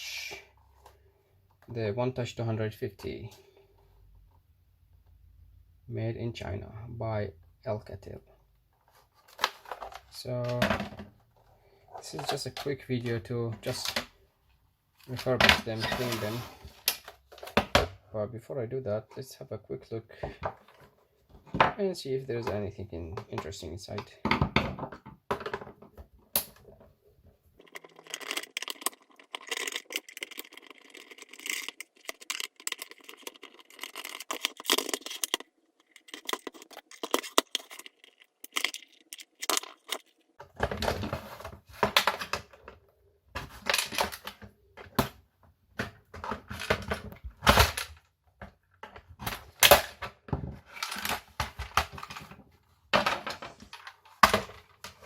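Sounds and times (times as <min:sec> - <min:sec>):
plastic parts clicking and rattling: 0:08.7 - 0:14.2, 0:15.0 - 0:18.0, 0:22.4 - 0:27.0, 0:27.6 - 0:55.0.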